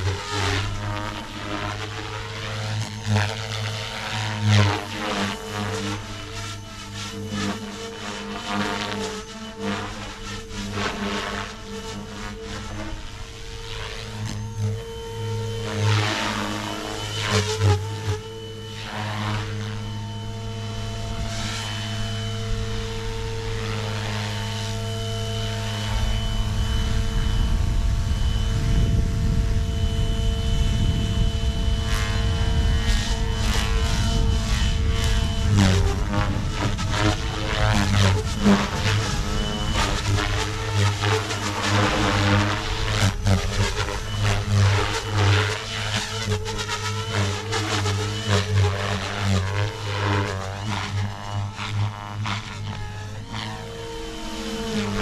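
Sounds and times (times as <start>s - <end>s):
rc helicopter rotor whine: 0.0s - 55.0s
low rumbling noise: 24.4s - 48.8s.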